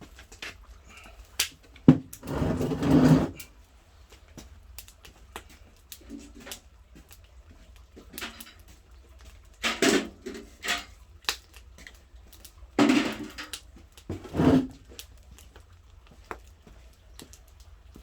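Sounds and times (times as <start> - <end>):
hard objects knocking: 1.9 - 3.4.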